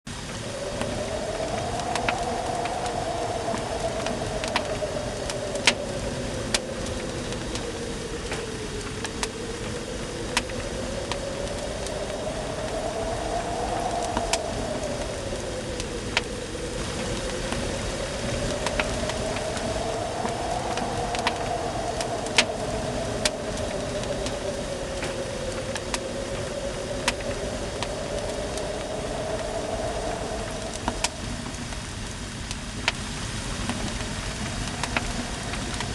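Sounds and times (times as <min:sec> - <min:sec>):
wood fire crackling: 0:00.1 - 0:35.9.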